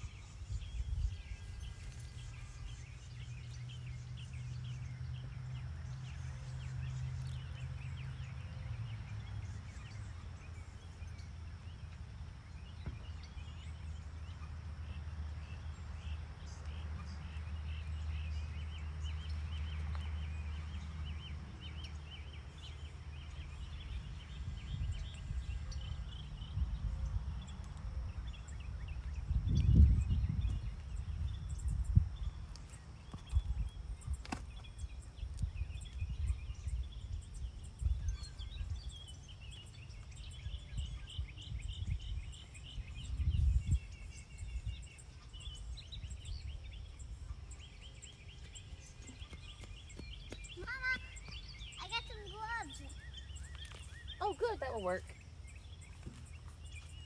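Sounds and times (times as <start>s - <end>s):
steady low hum: 13.2s - 41.0s
high chirps: 31.4s - 40.2s.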